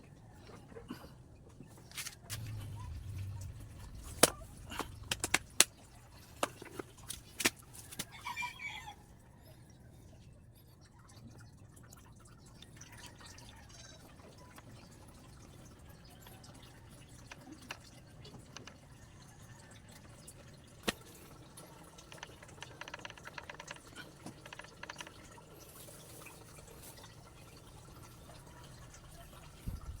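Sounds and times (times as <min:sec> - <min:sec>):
sharp clicks and knocks: 0:02.0 - 0:05.7, 0:22.0 - 0:25.4.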